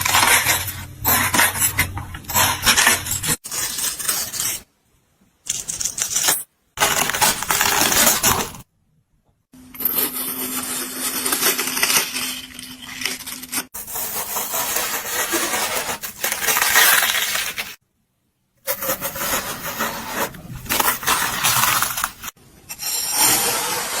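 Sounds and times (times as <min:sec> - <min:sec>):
watermelon crunching: 0:18.8 - 0:22.3.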